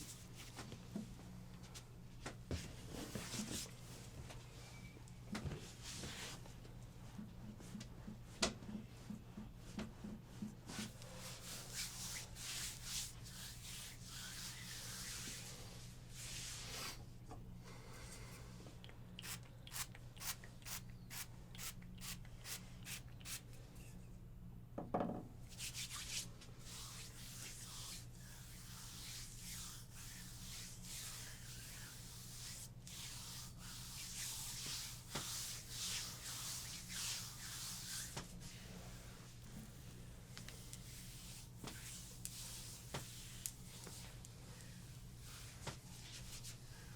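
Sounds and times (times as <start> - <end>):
hands rubbing over skin: 10.7 - 16.6, 25.5 - 46.6.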